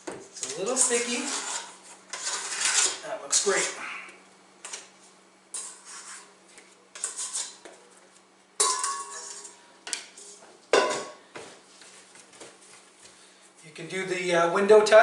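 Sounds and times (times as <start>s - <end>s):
metal kitchenware clattering: 8.6s - 9.6s, 10.2s - 11.2s.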